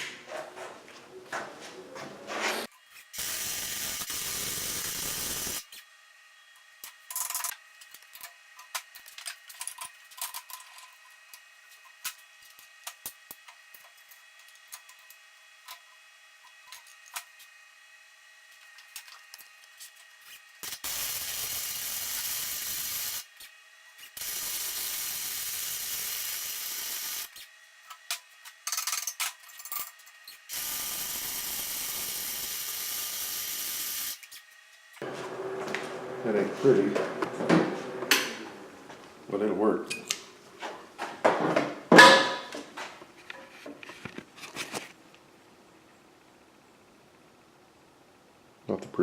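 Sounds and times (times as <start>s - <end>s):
welder arc sizzling: 3.1s - 5.8s, 20.6s - 27.5s, 30.5s - 34.3s.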